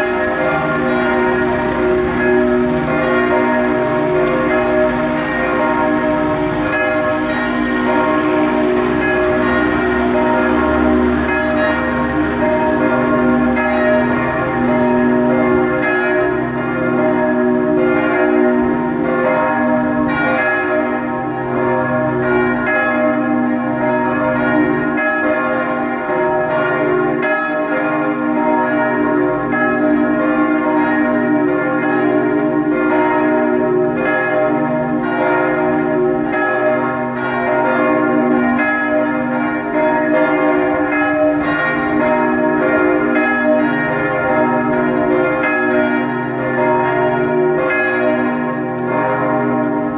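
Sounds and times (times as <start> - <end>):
church bells ringing: 0.0 - 49.9.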